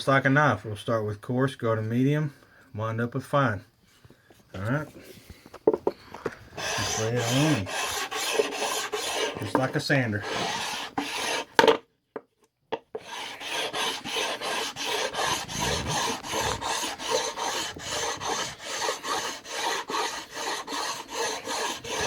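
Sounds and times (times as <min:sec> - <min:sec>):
sharpening stone rasping on wood: 0:06.6 - 0:11.6, 0:12.8 - 0:22.0.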